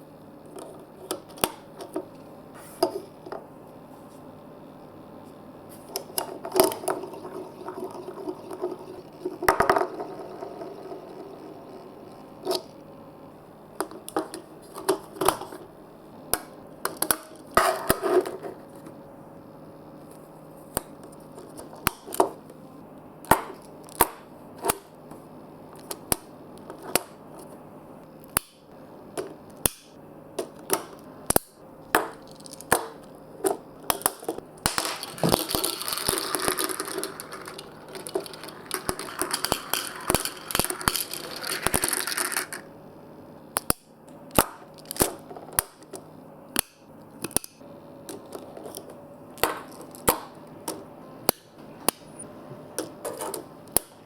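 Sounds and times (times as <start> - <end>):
marbles clacking and rolling: 6.1 - 12.7, 33.9 - 42.7.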